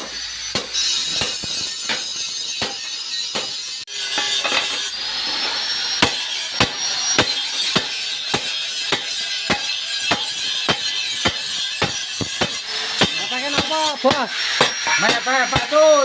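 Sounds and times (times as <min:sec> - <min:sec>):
hammer ringing on anvil: 0:06.0 - 0:15.8.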